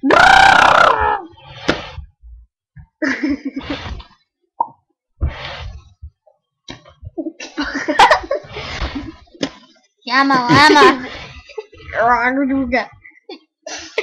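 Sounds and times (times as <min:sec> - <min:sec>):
silly vocal mouth noises: 0:00.0 - 0:02.0.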